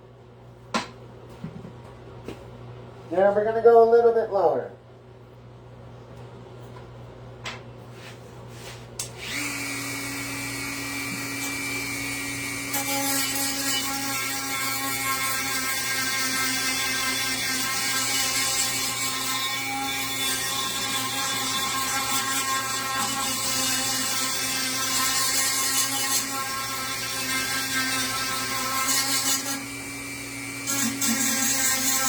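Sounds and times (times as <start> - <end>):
power tool whining on wood: 9.0 - 32.0.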